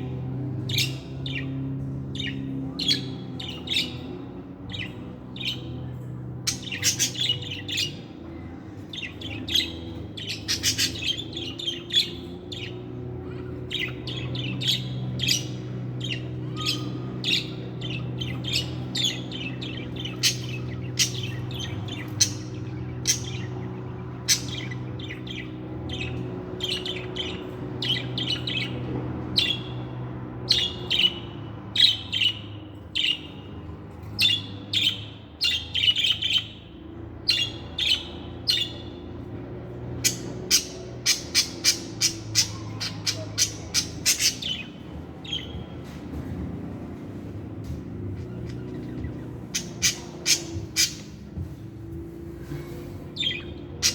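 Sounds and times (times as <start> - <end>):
steady low hum: 0.0 - 53.9
budgerigar chirping and warbling: 2.2 - 5.8, 6.5 - 8.1, 8.9 - 28.8, 40.0 - 45.6, 48.3 - 51.2.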